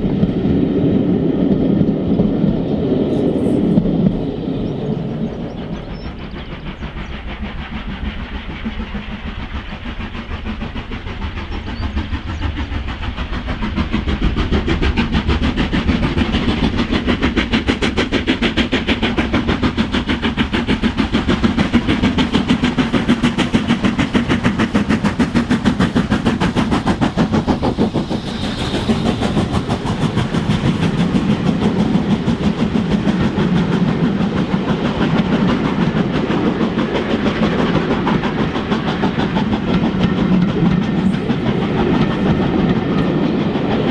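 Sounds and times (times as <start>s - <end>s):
rail noise: 0.0s - 43.9s
steam locomotive beats: 0.0s - 43.9s.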